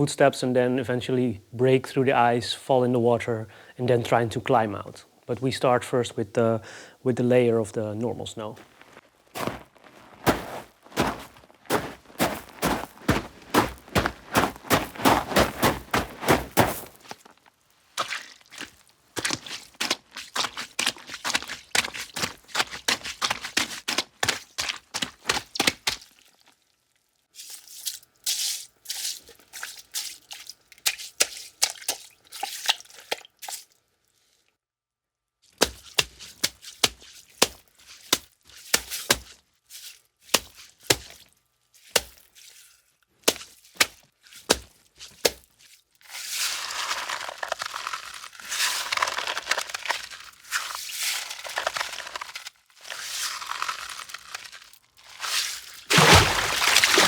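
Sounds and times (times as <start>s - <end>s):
footsteps crunching on snow: 8.3s - 26.0s, 46.6s - 57.0s.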